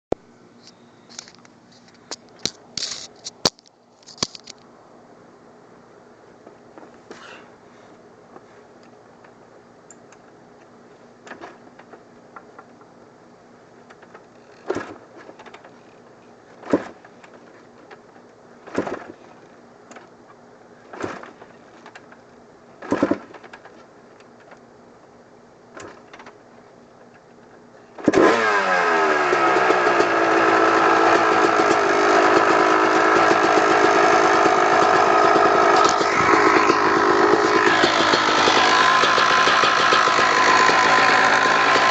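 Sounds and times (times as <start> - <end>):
two-stroke engine running loudly: 28.1 - 41.9
kick-start thumps: 33.3 - 41.9.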